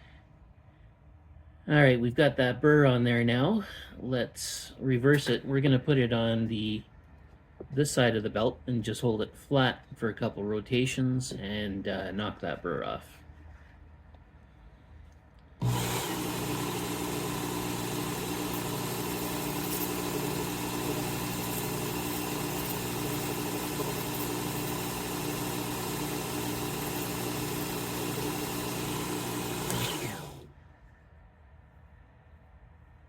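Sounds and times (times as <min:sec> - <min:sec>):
belt sharpener motor humming: 0:15.6 - 0:30.5.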